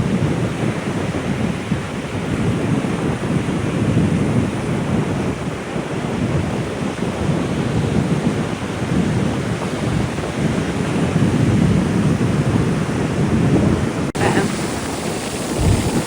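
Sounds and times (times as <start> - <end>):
wind buffeting microphone: 0.0 - 16.0
ocean surf on beach: 8.7 - 16.0.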